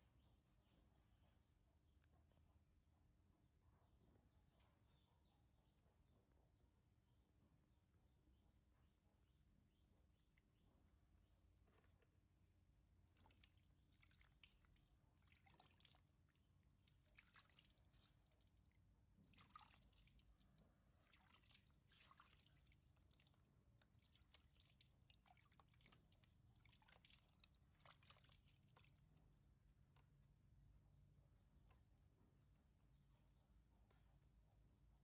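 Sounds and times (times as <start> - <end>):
soft wet ticks: 11.4 - 32.1.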